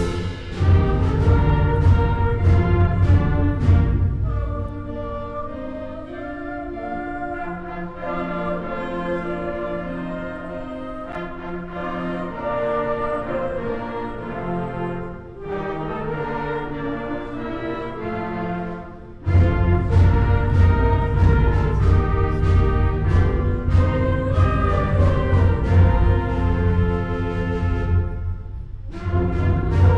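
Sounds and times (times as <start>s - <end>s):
heavy percussion: 0.0s - 5.0s, 19.2s - 29.9s
brass sustained chords: 0.0s - 29.9s.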